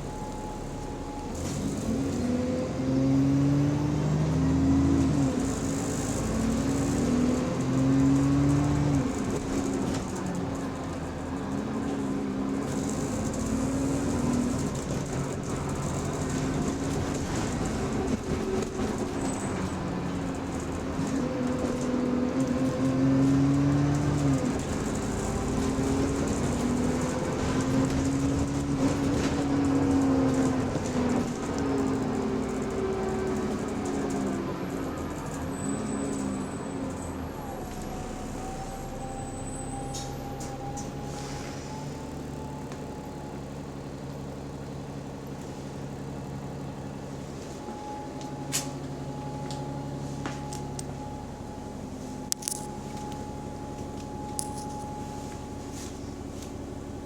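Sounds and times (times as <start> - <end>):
differential whine: 0.0 - 2.6, 47.4 - 57.0
bus engine droning: 0.0 - 57.0.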